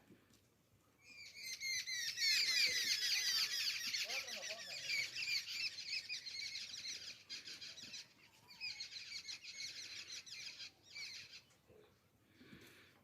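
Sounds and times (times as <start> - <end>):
small birds twittering: 1.0 - 11.9.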